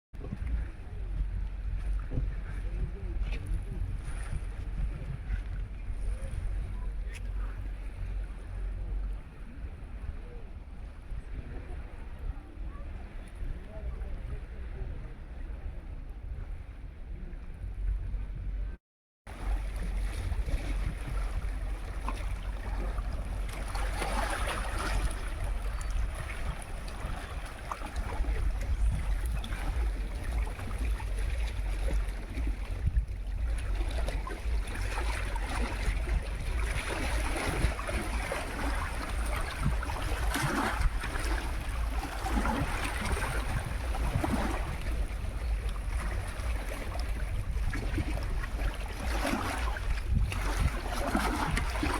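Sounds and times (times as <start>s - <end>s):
wind rumble on microphone: 0.2s - 51.9s
sea waves washing ashore: 19.3s - 51.9s.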